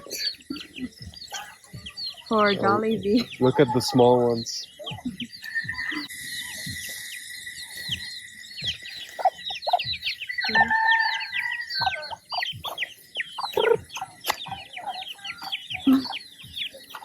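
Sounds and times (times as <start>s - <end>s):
chicks peeping: 0.0s - 17.0s
rooster crowing: 10.3s - 12.3s.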